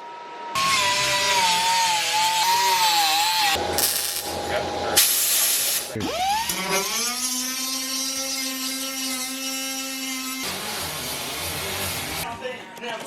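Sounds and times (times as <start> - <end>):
power tool motor whining: 0.6 - 12.3
hissing noise: 3.5 - 6.0.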